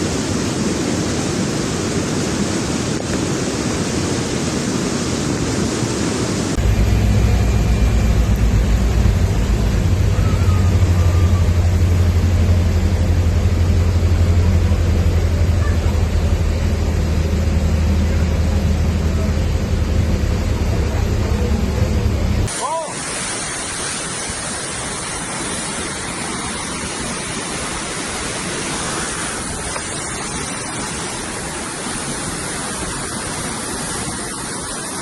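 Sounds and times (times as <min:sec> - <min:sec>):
floodwater rushing: 0:00.0 - 0:35.0
deep heavy low rumble: 0:06.5 - 0:22.5.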